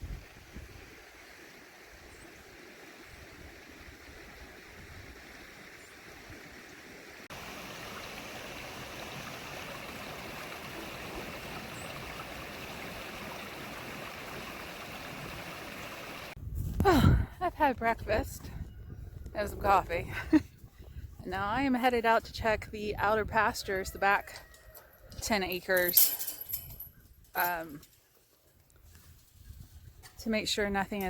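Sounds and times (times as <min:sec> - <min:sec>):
creek water rushing: 0:00.1 - 0:16.4.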